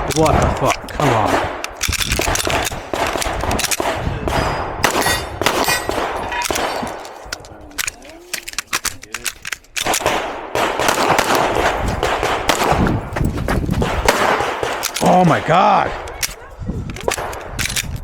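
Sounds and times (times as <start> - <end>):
pistol shots: 0.0 - 7.2, 9.8 - 13.0, 13.8 - 16.1.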